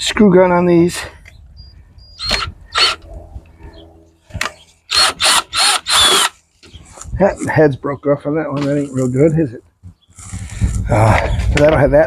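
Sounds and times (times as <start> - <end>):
cordless drill bursts: 2.2 - 3.0, 4.9 - 6.4.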